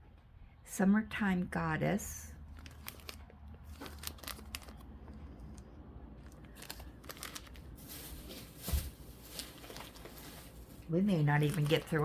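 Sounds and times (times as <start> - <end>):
faint packaging crinkling: 2.4 - 12.0.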